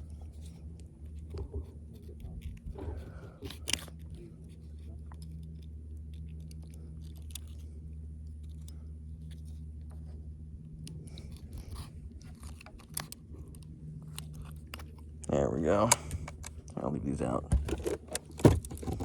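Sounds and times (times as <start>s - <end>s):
steady low hum: 0.0s - 19.0s
pliers clicking and scraping: 2.1s - 7.6s, 10.8s - 15.3s.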